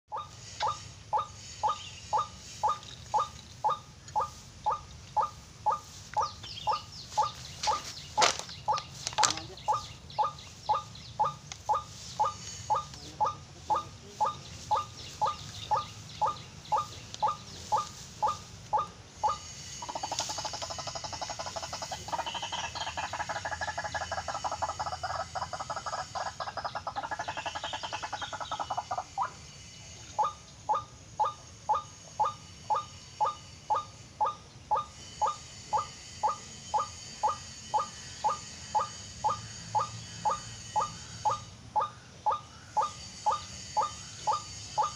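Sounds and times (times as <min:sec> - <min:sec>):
waterhen calling: 0:00.1 - 0:29.4.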